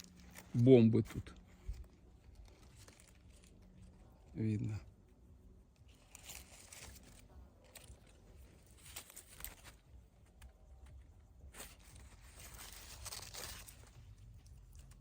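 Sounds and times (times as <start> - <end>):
leaves and branches crackling: 0.0 - 15.0.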